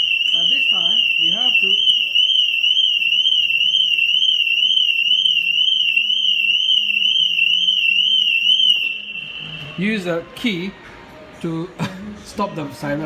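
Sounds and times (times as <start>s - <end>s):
car alarm siren warbling: 0.0s - 9.8s.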